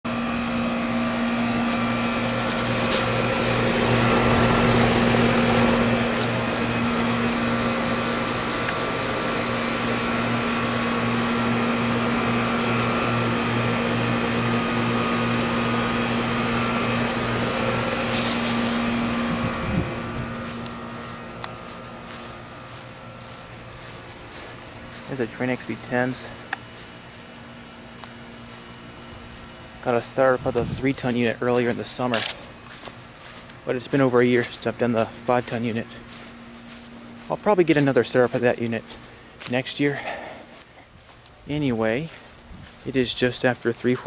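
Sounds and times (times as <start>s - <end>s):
air conditioner compressor hum: 0.0s - 44.0s
condenser fan whooshing: 0.0s - 44.0s.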